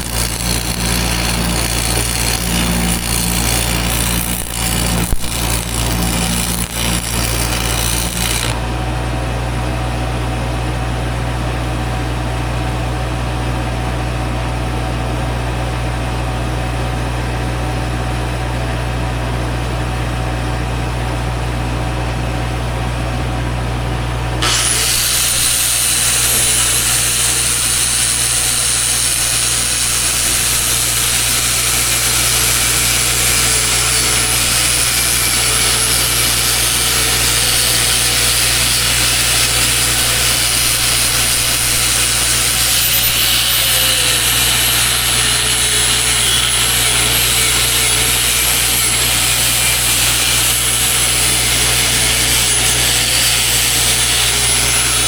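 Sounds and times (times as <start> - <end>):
welding arc frying hiss: 0.0 - 8.6, 24.4 - 50.3.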